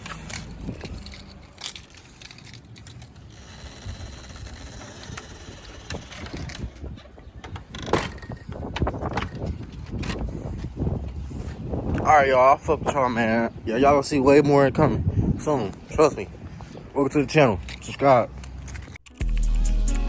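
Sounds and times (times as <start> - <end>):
car keys jingling: 0.0 - 11.0, 15.4 - 19.0.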